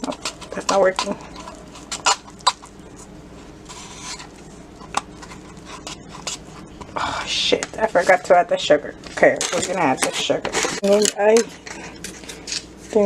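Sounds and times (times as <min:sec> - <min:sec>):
batter scraping hiss: 0:01.0 - 0:08.3.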